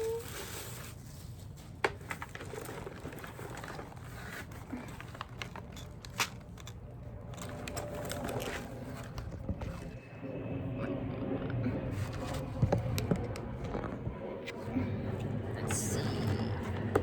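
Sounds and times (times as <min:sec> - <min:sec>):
packaging crinkling and rustling: 0:00.0 - 0:10.0.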